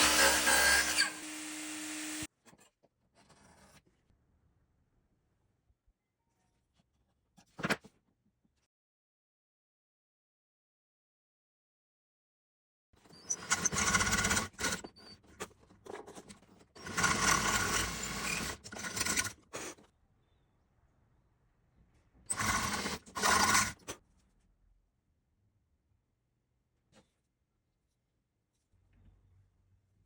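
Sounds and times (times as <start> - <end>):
jig scraping along wooden board: 0.0 - 2.3, 13.2 - 15.1, 15.9 - 19.8, 22.3 - 24.0.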